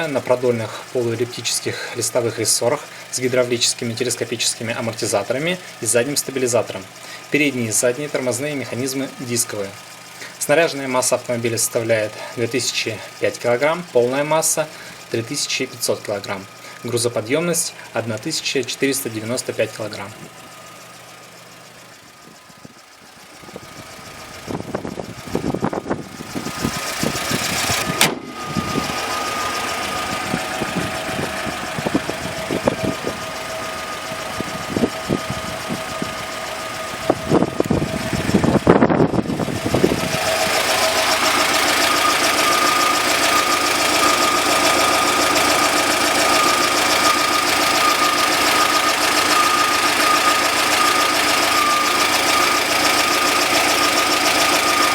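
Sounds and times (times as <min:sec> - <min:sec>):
engine high whine: 0:00.0 - 0:54.9
petrol engine running: 0:00.0 - 0:54.9
sharp click: 0:27.9 - 0:28.3.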